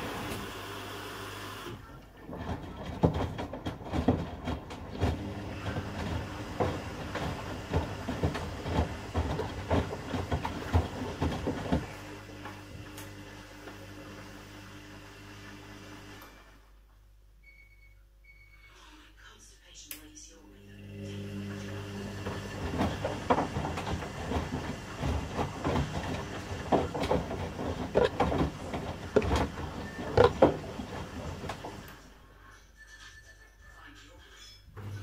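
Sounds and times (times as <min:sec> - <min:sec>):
washing machine motor hum: 0:00.0 - 0:16.6, 0:20.6 - 0:32.4, 0:34.7 - 0:35.0
washing machine knocks and thuds: 0:02.2 - 0:12.1, 0:21.9 - 0:31.9.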